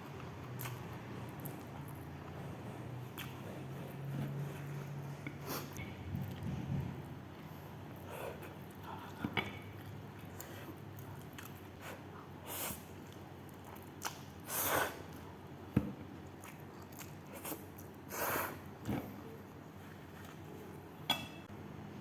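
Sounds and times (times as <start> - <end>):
wet chewing mouth sounds: 0.1 - 6.5.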